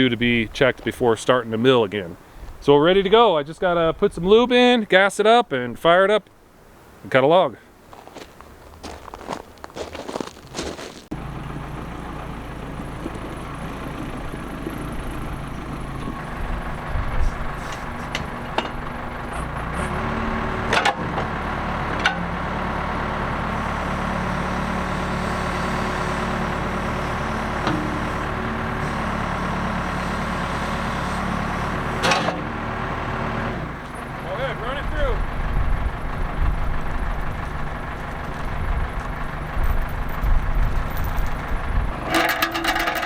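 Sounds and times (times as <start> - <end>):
small gasoline engine running: 11.1 - 43.0
clicks and knocks: 42.0 - 43.0.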